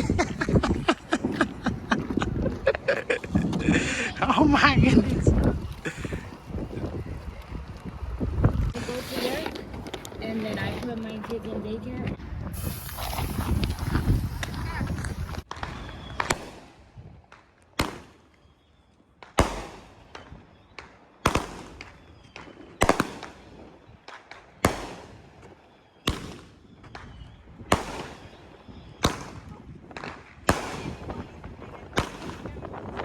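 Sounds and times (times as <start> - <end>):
firework bangs: 0.0 - 7.1, 12.5 - 18.3, 19.2 - 33.0
crackling firework pops: 12.5 - 18.6, 19.2 - 33.0.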